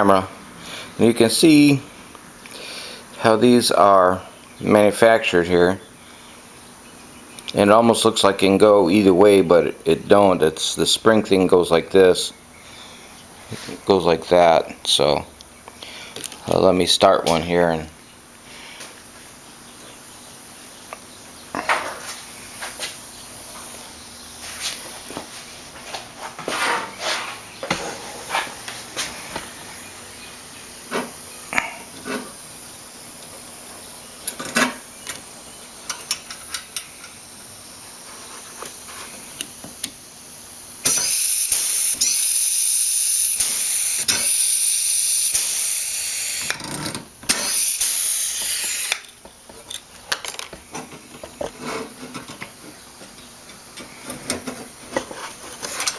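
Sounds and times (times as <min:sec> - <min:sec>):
pneumatic rivet gun hissing: 0:40.8 - 0:46.6, 0:47.2 - 0:49.2.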